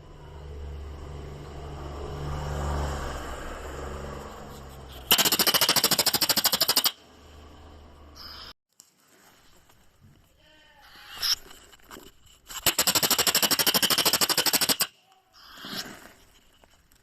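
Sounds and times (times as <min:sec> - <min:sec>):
weasel chattering call: 0:10.8 - 0:11.4, 0:14.0 - 0:15.8.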